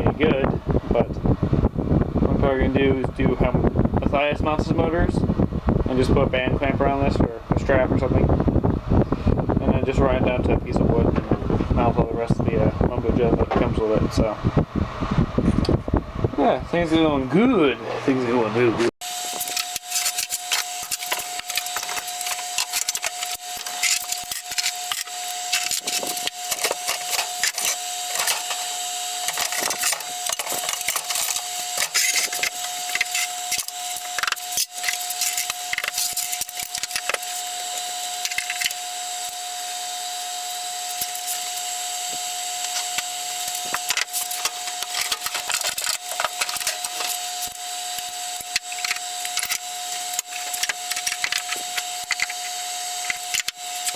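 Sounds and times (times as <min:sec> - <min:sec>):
steady hum: 0:19.0 - 0:53.9
tools and metal parts clattering: 0:19.2 - 0:38.8, 0:40.9 - 0:41.6, 0:42.6 - 0:53.9.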